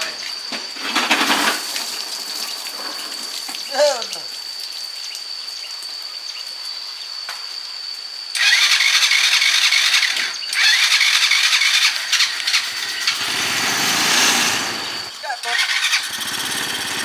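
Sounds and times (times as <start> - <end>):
vehicle engine starting: 8.4 - 17.0.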